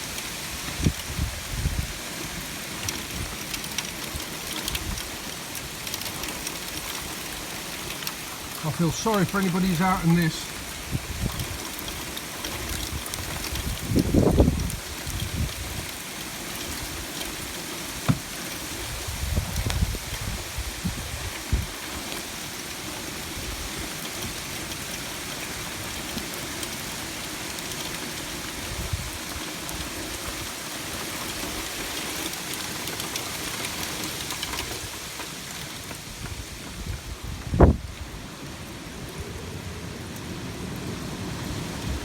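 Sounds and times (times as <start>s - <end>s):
heavy rain and sleet: 0.0s - 42.0s
wind buffeting microphone: 0.6s - 2.0s, 10.5s - 11.7s, 12.7s - 15.9s, 18.1s - 21.8s, 36.1s - 38.2s.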